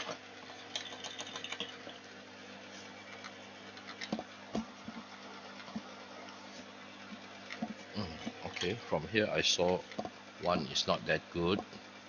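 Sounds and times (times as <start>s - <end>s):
low electrical hum: 0.0s - 12.0s
small tools tapping and scratching: 7.1s - 8.8s.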